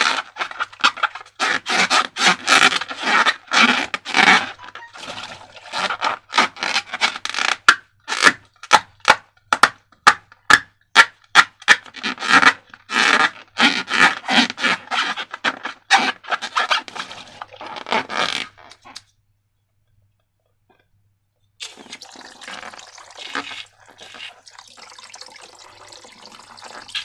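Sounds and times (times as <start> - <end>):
slime and balloons rubbed by hand: 0.0 - 7.2, 22.5 - 24.4
squishing rubs: 22.6 - 24.4.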